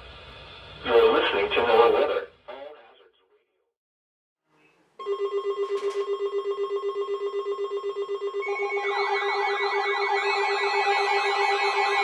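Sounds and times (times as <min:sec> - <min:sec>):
rapid pulsing alarm tone: 0:05.0 - 0:12.0
steady high alarm tone: 0:05.0 - 0:12.0
warbling siren-like alarm: 0:05.0 - 0:12.0.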